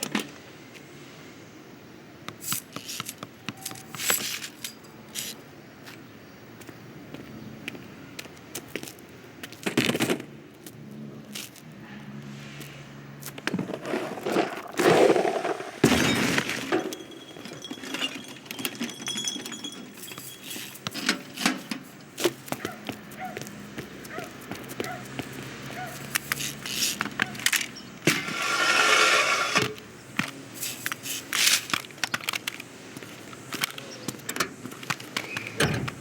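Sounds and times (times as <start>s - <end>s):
foley clatters and knocks: 13.3s - 22.7s.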